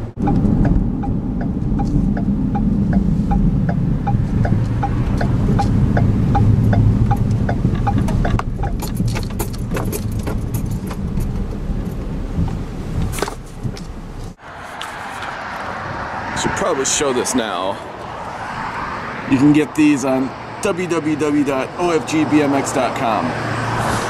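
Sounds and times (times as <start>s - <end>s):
road and engine rumble: 0.0s - 24.0s
light regular ticking: 0.2s - 14.4s.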